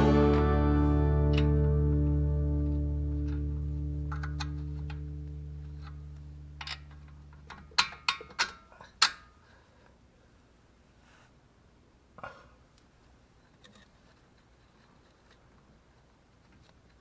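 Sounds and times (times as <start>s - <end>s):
background music: 0.0s - 6.0s.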